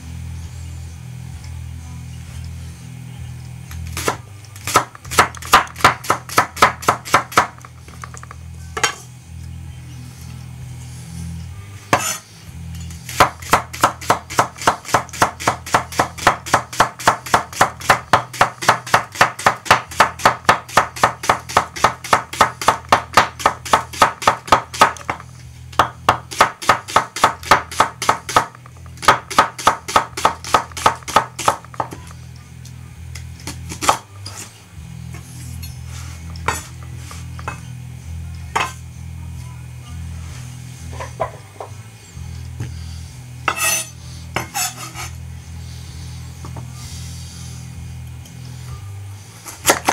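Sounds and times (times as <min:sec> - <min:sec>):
quiet background music: 0:00.0 - 0:49.9
knife chopping on cutting board: 0:03.9 - 0:09.0, 0:11.9 - 0:12.2, 0:13.1 - 0:32.0, 0:33.4 - 0:34.1.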